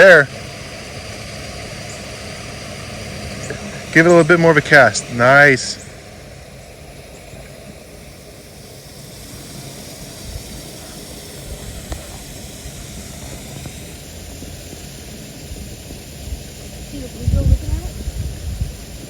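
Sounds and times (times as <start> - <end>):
wind on microphone: 10.0 - 19.0.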